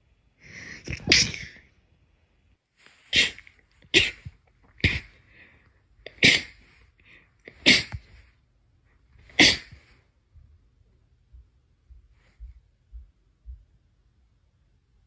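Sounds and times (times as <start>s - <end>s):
sharp sneezes: 0.6s - 1.6s, 3.1s - 5.2s, 6.1s - 6.7s, 7.5s - 8.1s, 9.3s - 9.8s.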